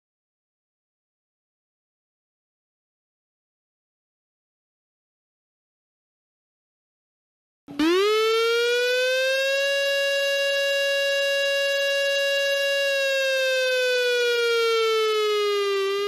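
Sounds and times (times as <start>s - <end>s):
siren wailing: 7.7s - 16.0s.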